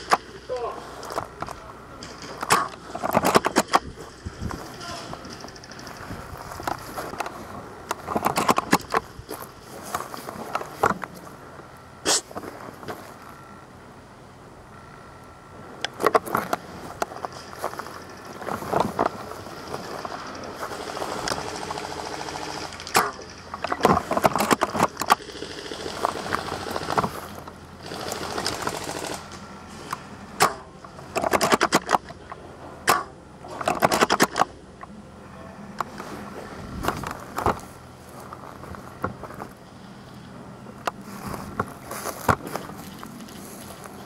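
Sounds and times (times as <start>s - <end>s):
rattling bursts of rapid clicks: 1.1s - 7.3s, 15.9s - 29.4s
airsoft gun clicks: 29.9s - 34.6s.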